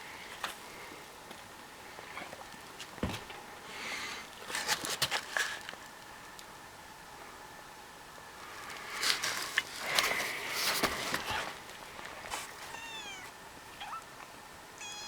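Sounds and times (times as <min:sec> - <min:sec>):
animals scuffling: 0:08.4 - 0:12.8.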